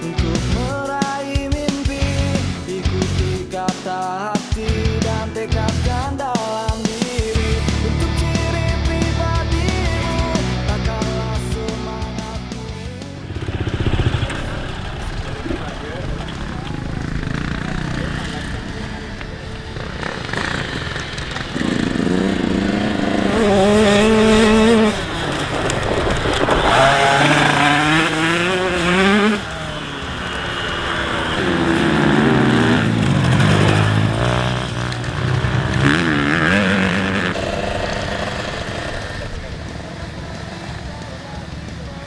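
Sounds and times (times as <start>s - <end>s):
motorcycle engine revving: 13.1s - 42.0s.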